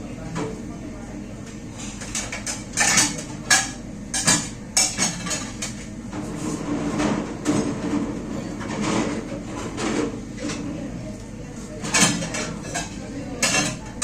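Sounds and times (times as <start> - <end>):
scraping and rinsing dishes: 1.8 - 10.7, 11.8 - 14.0
dishes clattering: 1.9 - 10.7, 11.8 - 14.0.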